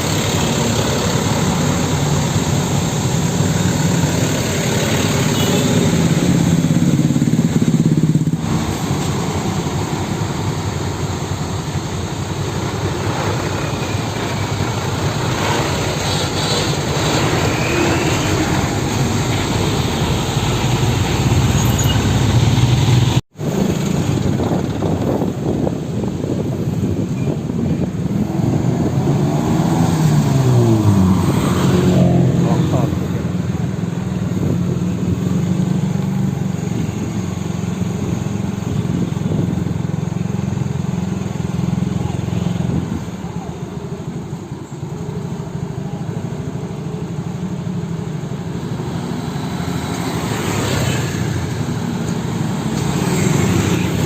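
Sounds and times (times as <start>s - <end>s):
truck engines running: 0.0s - 54.0s.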